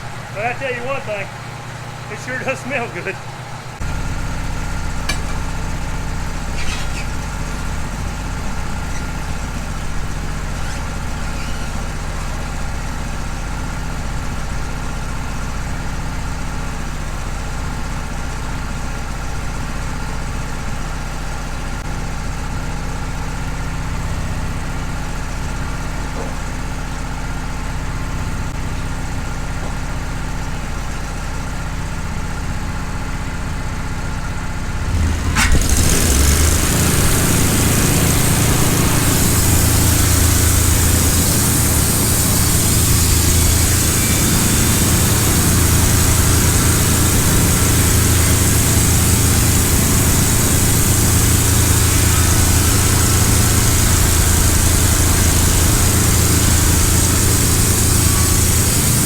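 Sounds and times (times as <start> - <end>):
sawmill engine running steadily: 0.0 - 59.0.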